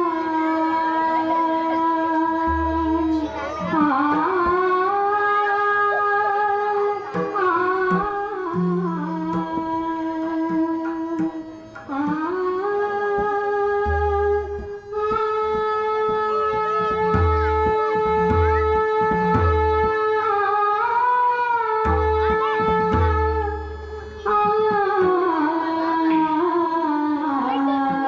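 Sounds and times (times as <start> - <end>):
woman singing: 0.0 - 13.7, 24.2 - 28.0
harmonium held notes: 0.0 - 28.0.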